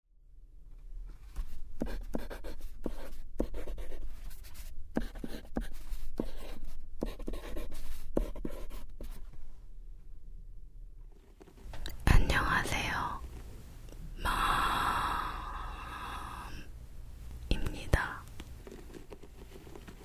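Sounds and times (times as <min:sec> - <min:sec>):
scratchy rustling: 0:18.5 - 0:20.0.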